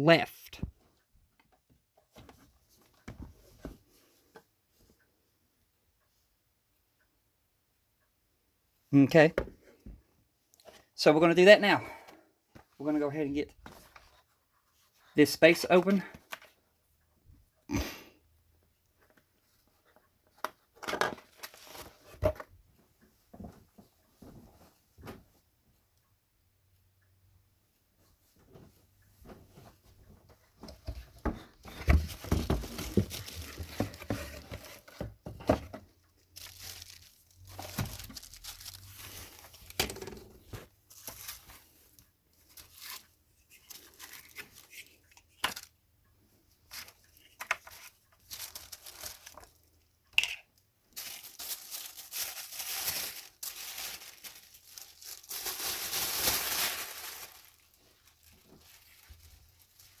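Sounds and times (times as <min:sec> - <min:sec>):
packaging crinkling and tearing: 0:32.1 - 0:34.9, 0:36.3 - 0:39.8, 0:47.5 - 0:49.6, 0:50.9 - 1:00.0.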